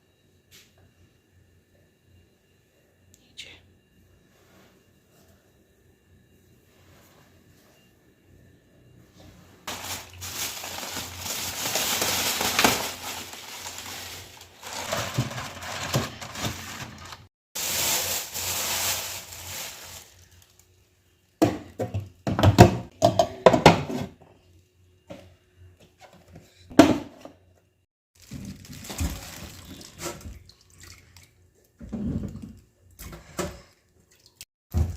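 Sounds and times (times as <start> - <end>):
household items knocking: 21.4 - 24.0.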